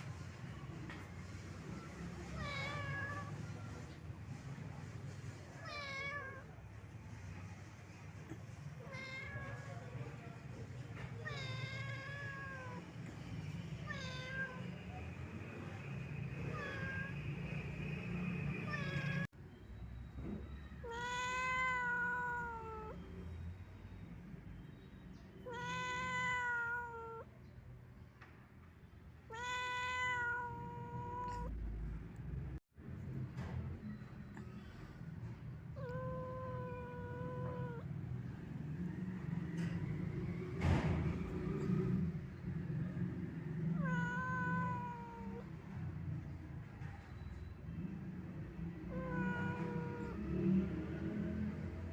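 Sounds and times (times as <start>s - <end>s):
cat meowing: 2.2s - 4.0s, 5.5s - 6.7s, 8.2s - 15.2s, 16.2s - 17.7s, 18.5s - 19.3s, 20.8s - 23.2s, 25.4s - 27.3s, 29.2s - 31.5s, 35.7s - 38.0s, 43.6s - 45.8s, 48.8s - 50.8s.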